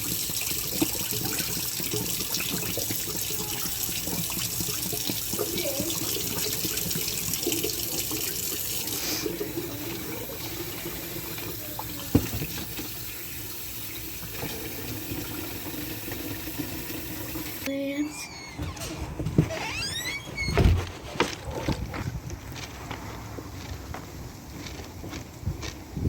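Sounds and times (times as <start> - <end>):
tap water running into bottles: 0.0 - 18.6.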